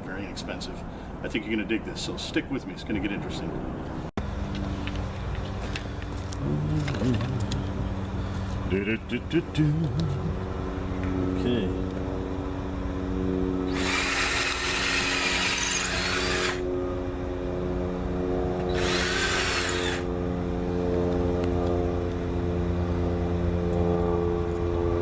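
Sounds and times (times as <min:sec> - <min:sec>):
steady hum: 0:04.1 - 0:25.0
power tool cutting wood: 0:13.7 - 0:16.7, 0:18.6 - 0:20.1.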